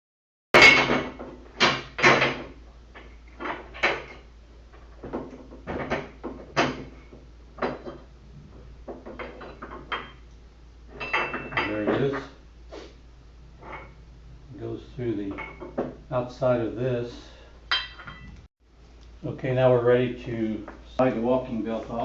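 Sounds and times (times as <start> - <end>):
metal tools clanking and rattling: 0.6 - 8.1, 8.9 - 10.2, 10.9 - 12.4, 13.6 - 14.0, 15.3 - 16.0, 17.7 - 18.5.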